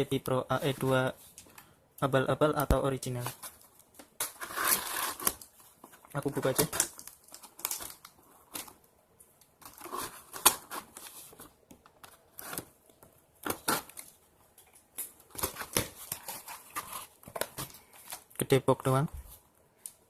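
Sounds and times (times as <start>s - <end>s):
packaging crackling and tearing: 3.1s - 8.8s.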